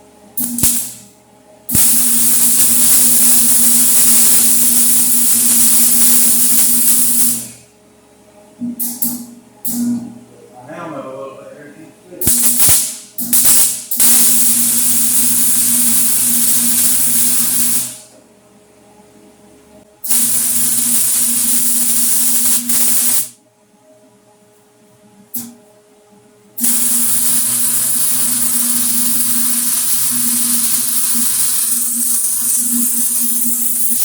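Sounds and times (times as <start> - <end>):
low electrical hum: 0.0 - 34.0
arc welding crackling hiss: 0.4 - 1.1, 1.7 - 7.6, 12.2 - 18.1, 20.0 - 23.4, 26.6 - 34.0
welding arc strike: 0.4 - 1.1, 1.7 - 7.5, 12.2 - 18.0, 20.1 - 23.3, 26.6 - 34.0.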